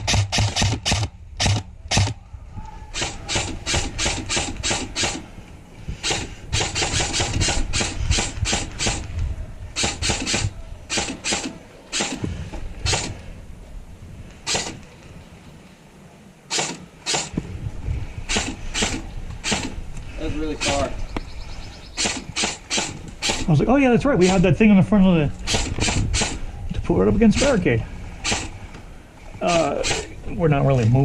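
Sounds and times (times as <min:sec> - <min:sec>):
airsoft rifle firing: 0:00.0 - 0:02.2, 0:03.0 - 0:05.3, 0:06.0 - 0:09.1, 0:09.8 - 0:13.2, 0:14.4 - 0:14.9, 0:16.5 - 0:17.4, 0:18.3 - 0:19.8, 0:22.0 - 0:23.6, 0:25.4 - 0:26.4, 0:28.2 - 0:28.6.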